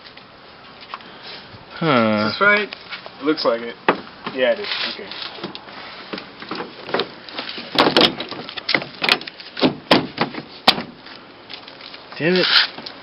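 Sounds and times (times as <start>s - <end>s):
clicks and knocks of hard parts: 6.2s - 11.0s.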